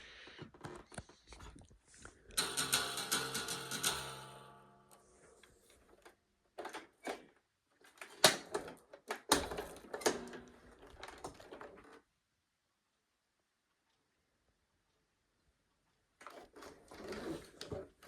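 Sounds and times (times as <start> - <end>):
irregular clicks and knocks: 0.5 - 12.0.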